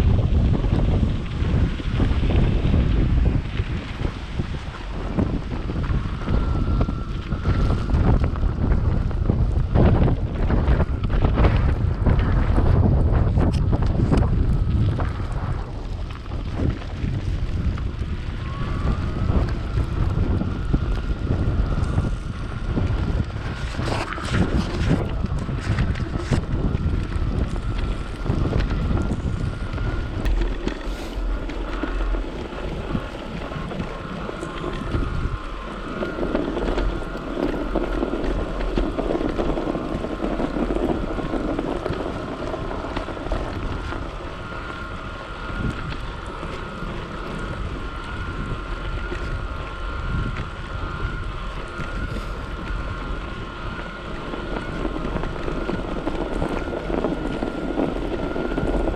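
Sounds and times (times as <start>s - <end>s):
wind buffeting microphone: 0.0s - 58.9s
thin high whine: 17.8s - 58.7s.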